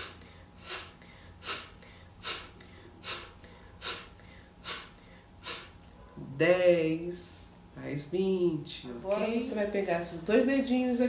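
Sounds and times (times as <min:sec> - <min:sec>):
forceful puffs of breath through nose: 0:00.0 - 0:05.8.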